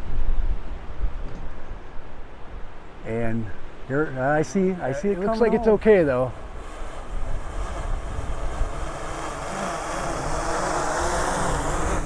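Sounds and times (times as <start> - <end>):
wind rumble on microphone: 0.0 - 3.9, 5.0 - 12.0
drone propellers buzzing: 5.0 - 12.0.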